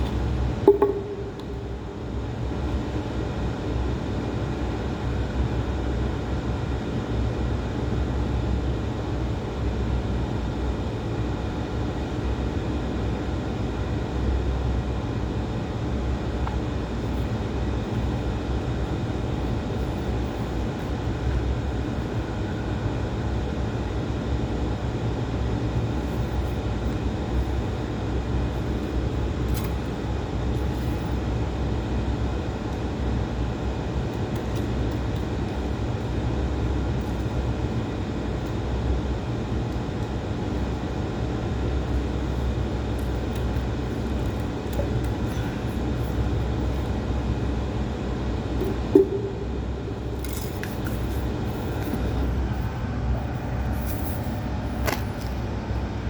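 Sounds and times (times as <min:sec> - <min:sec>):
low mechanical rumble: 0:00.0 - 0:03.6, 0:15.8 - 0:56.0.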